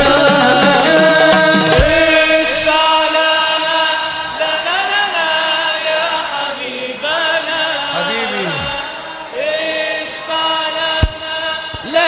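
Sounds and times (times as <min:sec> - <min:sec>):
music: 0:00.0 - 0:04.6
men chanting: 0:00.0 - 0:10.8.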